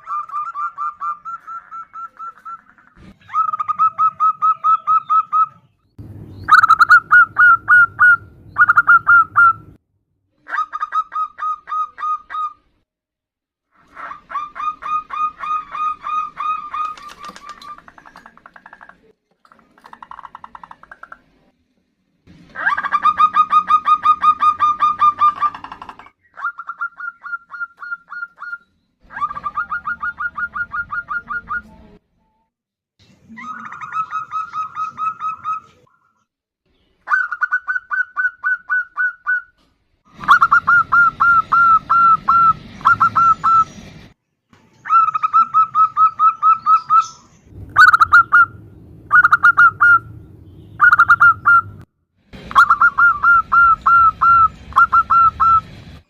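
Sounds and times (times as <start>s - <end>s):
doves cooing: 6.5s - 9.7s, 13.8s - 19.1s, 22.5s - 31.7s, 40.1s - 43.8s, 44.9s - 51.8s, 52.4s - 56.0s.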